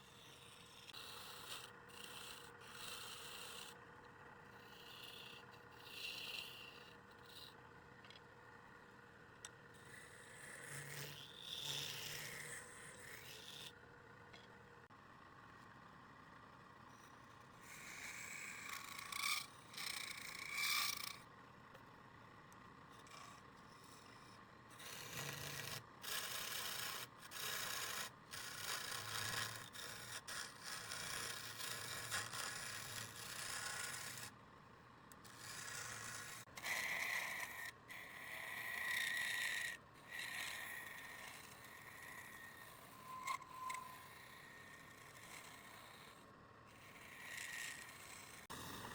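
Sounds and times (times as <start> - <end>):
wood scraped on a lathe: 0.2 - 3.8, 4.5 - 7.5, 9.9 - 13.8, 17.7 - 21.2, 23.1 - 34.4, 35.2 - 48.9.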